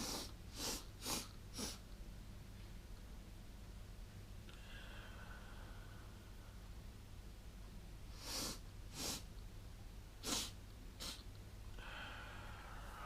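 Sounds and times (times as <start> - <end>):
person sniffing sharply: 0.0 - 1.8, 8.1 - 9.3, 10.2 - 13.0.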